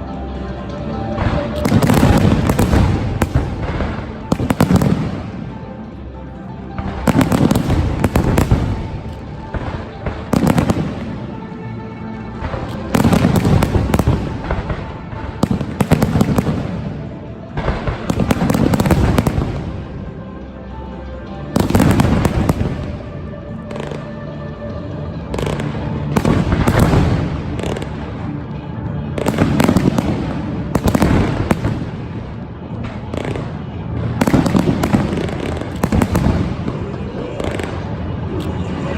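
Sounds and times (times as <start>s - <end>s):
show music: 0.0s - 38.9s
fireworks crackling bursts: 1.1s - 6.0s, 6.7s - 20.2s, 21.6s - 24.2s, 25.3s - 38.9s.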